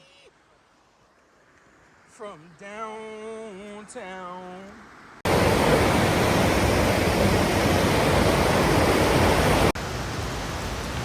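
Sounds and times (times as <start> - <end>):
waterfall rushing: 5.3 - 11.0.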